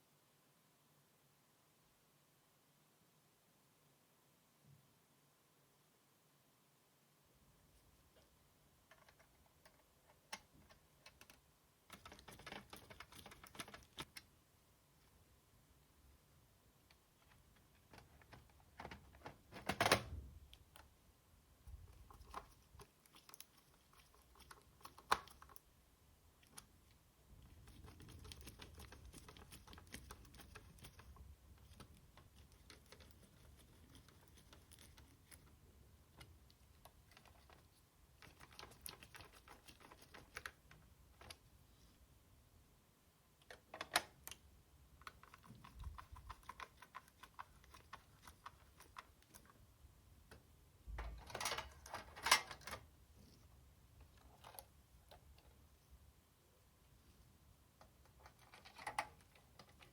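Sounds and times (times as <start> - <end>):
plastic parts clicking and tapping: 8.8 - 14.3, 16.9 - 20.9, 27.4 - 41.5, 43.4 - 44.4, 50.3 - 52.9, 57.8 - 59.9.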